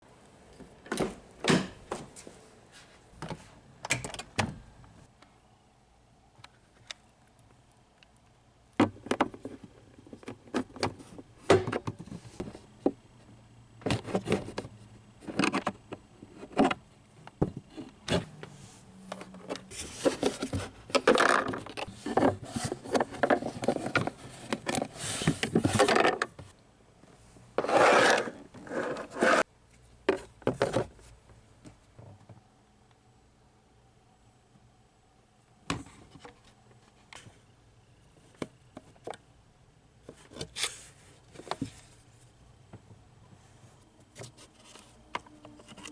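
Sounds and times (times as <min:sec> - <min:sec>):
rubbing and scraping: 0:27.6 - 0:29.5.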